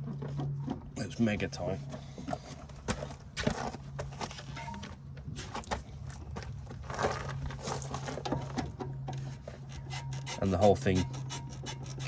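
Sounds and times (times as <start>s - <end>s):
spanner clicking on bolt: 9.7s - 12.0s.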